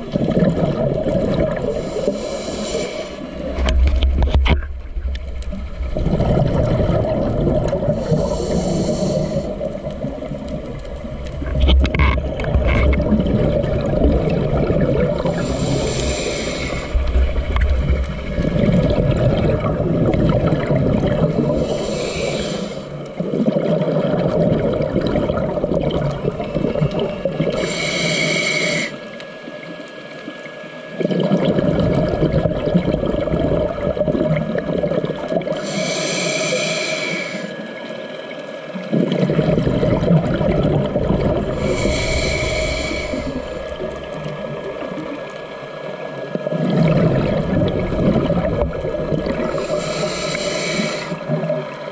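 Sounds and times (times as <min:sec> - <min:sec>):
gurgle of exhaled bubbles: 0:00.0 - 0:28.9, 0:31.0 - 0:37.3, 0:38.8 - 0:51.9
diver breathing through regulator: 0:01.6 - 0:04.0, 0:07.8 - 0:09.9, 0:15.2 - 0:18.6, 0:21.1 - 0:23.1, 0:27.4 - 0:29.1, 0:35.5 - 0:37.8, 0:41.3 - 0:44.1, 0:49.2 - 0:51.4.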